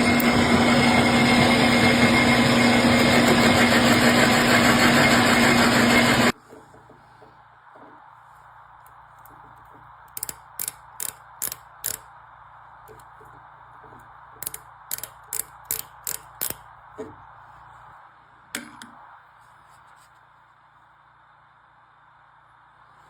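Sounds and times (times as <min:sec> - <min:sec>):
steady machine hum: 0:00.0 - 0:06.8
sharp mechanical clicks: 0:10.1 - 0:12.1.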